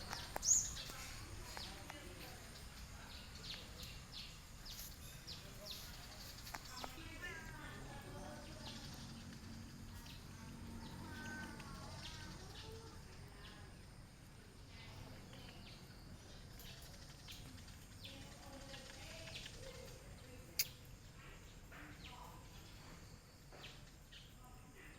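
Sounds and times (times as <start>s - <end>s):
sharp click: 20.6s - 20.8s.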